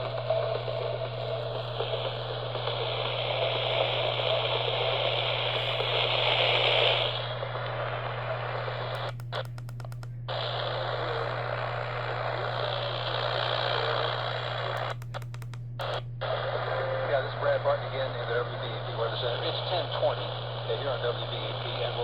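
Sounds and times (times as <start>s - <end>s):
constant low hum: 0.0s - 22.0s
radio static hiss: 0.0s - 22.0s
rapid clicks: 8.9s - 10.2s, 14.2s - 16.0s.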